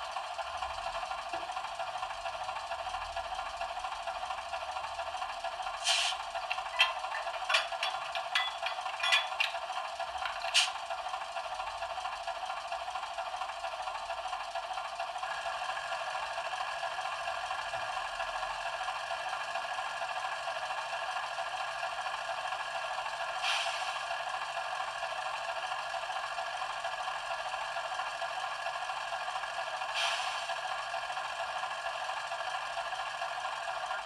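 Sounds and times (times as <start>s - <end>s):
model locomotive diesel engine: 0.0s - 34.0s
brief hisses: 5.8s - 6.2s.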